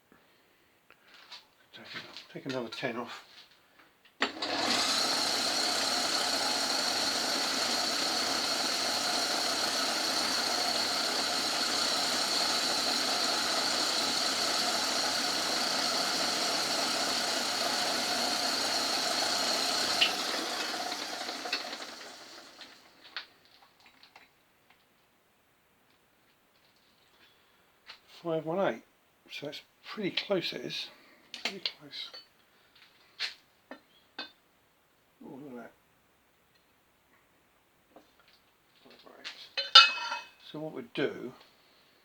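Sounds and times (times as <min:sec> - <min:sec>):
lathe whining and humming: 0:04.2 - 0:23.1.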